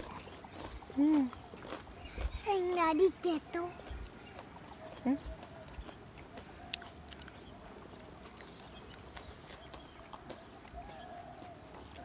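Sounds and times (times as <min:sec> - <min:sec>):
chewing and mouth clicks: 0:00.0 - 0:12.0.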